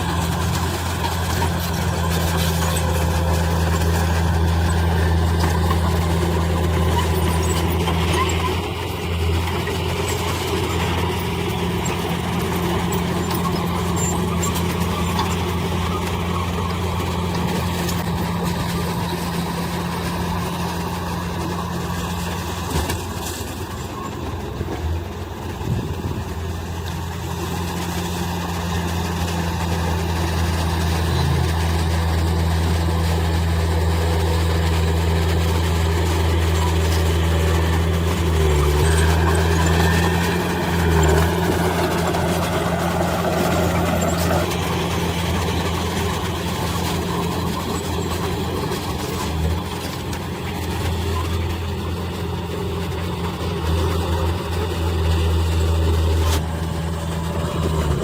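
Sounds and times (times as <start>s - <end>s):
heavy diesel engine droning: 0.0s - 58.0s.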